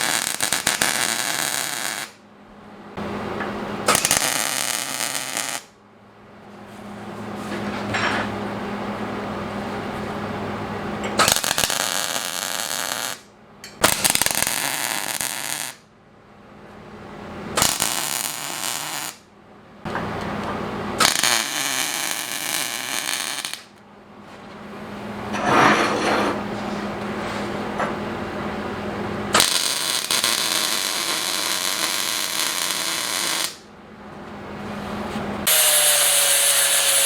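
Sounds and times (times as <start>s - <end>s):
welding arc crackling: 0.0s - 2.2s, 3.9s - 5.7s, 11.2s - 15.8s, 17.6s - 19.2s, 21.0s - 23.7s, 29.4s - 33.6s, 35.5s - 37.0s.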